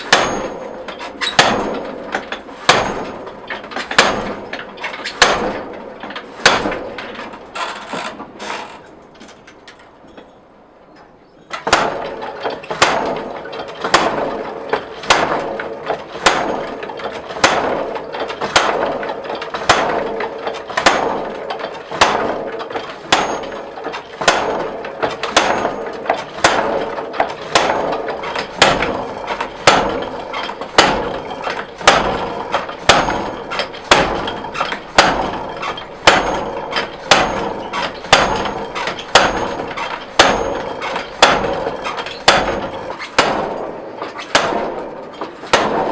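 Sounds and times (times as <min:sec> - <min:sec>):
hammer striking steel on anvil: 0:00.0 - 0:03.2, 0:16.2 - 0:17.8, 0:20.7 - 0:45.9.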